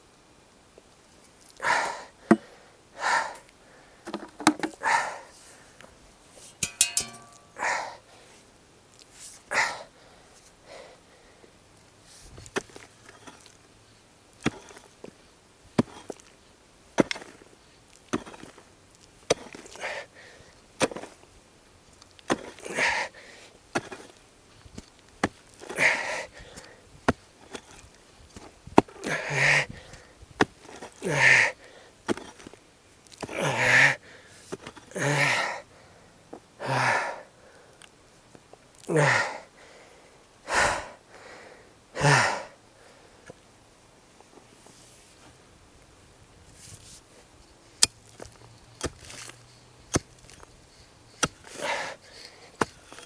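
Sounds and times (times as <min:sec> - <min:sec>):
heavy breaths of effort: 0:01.6 - 0:04.1, 0:04.8 - 0:05.8, 0:07.6 - 0:08.4, 0:09.5 - 0:11.6, 0:19.7 - 0:20.6, 0:22.5 - 0:23.6, 0:25.6 - 0:26.9, 0:29.0 - 0:30.2, 0:30.9 - 0:32.0, 0:33.2 - 0:37.8, 0:38.9 - 0:43.4, 0:50.7 - 0:53.0
hand tool chopping ground: 0:02.2 - 0:02.5, 0:06.5 - 0:07.6, 0:12.4 - 0:13.6, 0:14.4 - 0:15.2, 0:15.8 - 0:16.4, 0:17.0 - 0:20.1, 0:20.8 - 0:21.2, 0:22.0 - 0:33.8, 0:34.4 - 0:35.2, 0:47.7 - 0:53.0.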